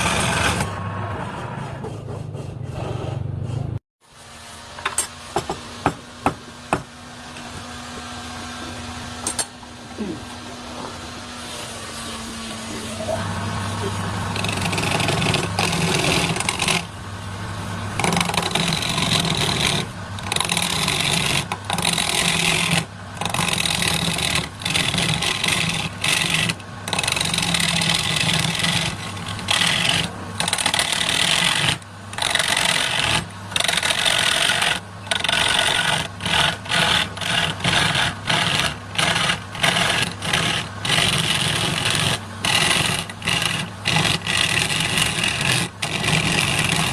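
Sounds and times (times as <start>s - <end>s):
power tool motor humming: 12.1s - 16.9s, 18.0s - 46.9s
rasping on wood: 13.7s - 16.9s, 18.0s - 46.9s.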